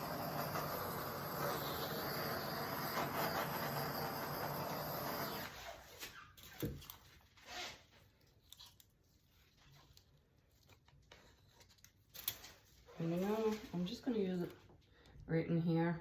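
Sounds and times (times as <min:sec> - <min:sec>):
handheld torch hissing: 0:00.0 - 0:05.6.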